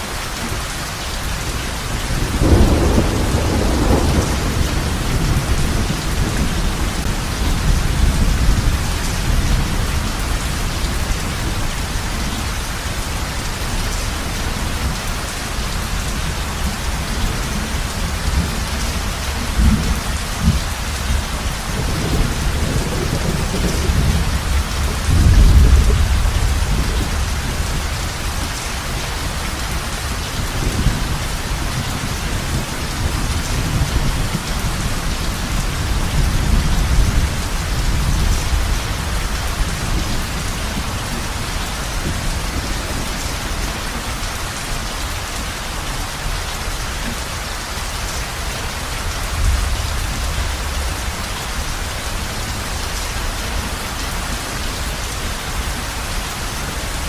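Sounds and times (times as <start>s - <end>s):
heavy rain on a roof: 0.0s - 57.0s
thunder rumbling: 1.9s - 13.0s, 15.7s - 29.4s.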